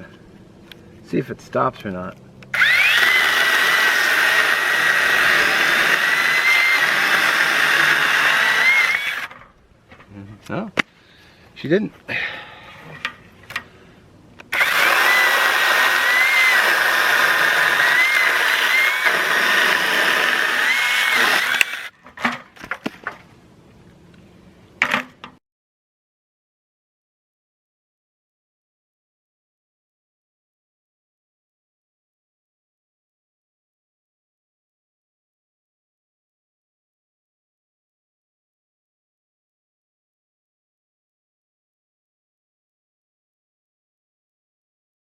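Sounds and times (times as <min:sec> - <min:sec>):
small chainsaw cutting wood: 0:02.5 - 0:09.4, 0:14.5 - 0:22.0.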